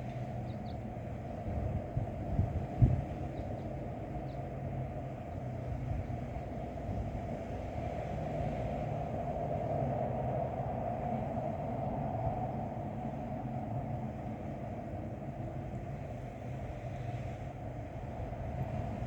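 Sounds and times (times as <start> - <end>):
wind blowing: 5.1 - 19.0.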